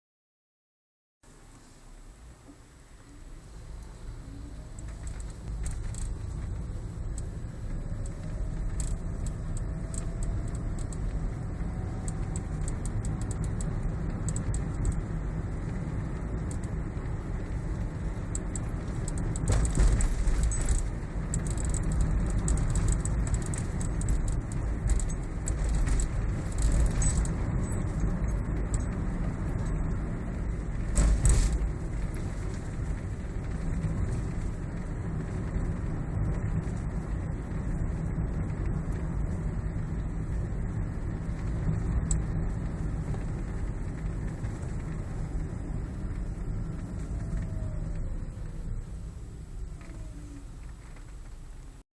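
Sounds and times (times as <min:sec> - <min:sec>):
road and tyre noise: 0:01.2 - 0:51.8
rattling clicks under dashboard: 0:18.3 - 0:28.9, 0:30.8 - 0:33.1.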